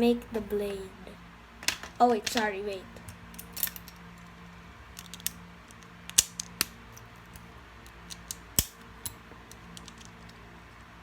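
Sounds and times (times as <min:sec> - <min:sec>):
plastic bricks clicking and clattering: 0:04.9 - 0:06.7, 0:07.9 - 0:10.4.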